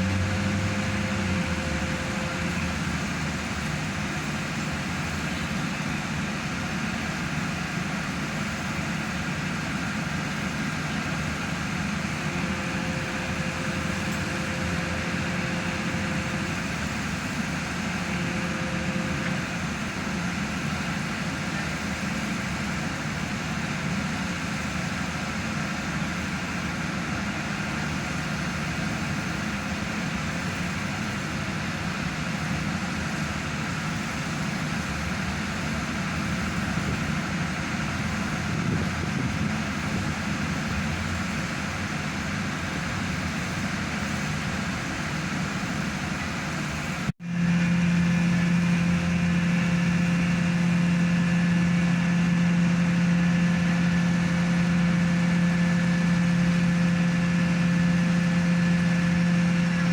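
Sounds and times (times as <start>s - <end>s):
faint whine: 0.0s - 4.4s
diesel engine running: 0.0s - 59.9s.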